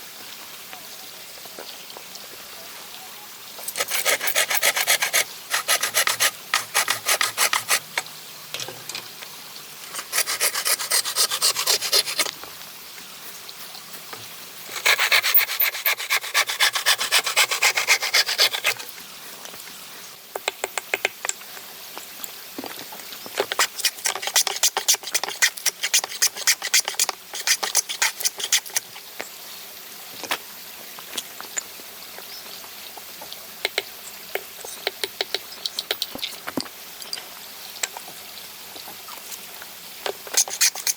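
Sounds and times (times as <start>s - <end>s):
hand tool rasping wood: 3.7s - 7.9s, 9.9s - 12.3s, 14.7s - 18.8s, 23.5s - 29.0s, 40.2s - 40.9s.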